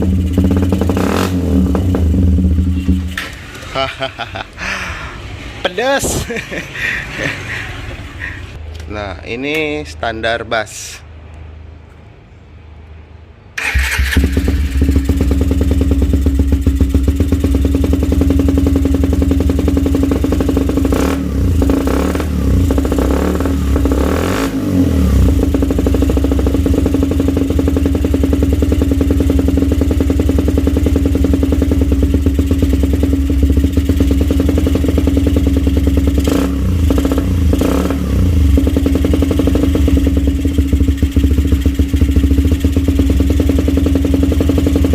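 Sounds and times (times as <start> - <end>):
motorcycle engine idling: 0.0 - 3.4, 13.6 - 20.9, 25.3 - 44.9
motorcycle starting: 0.0 - 4.4, 13.6 - 44.9.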